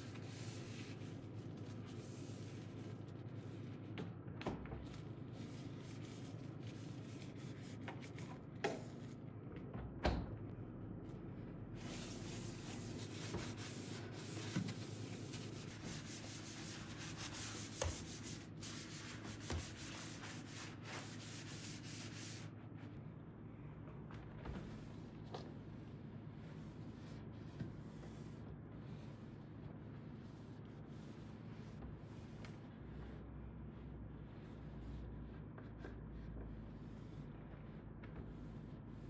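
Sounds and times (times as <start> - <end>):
cloth rubbing strokes: 11.8 - 22.9.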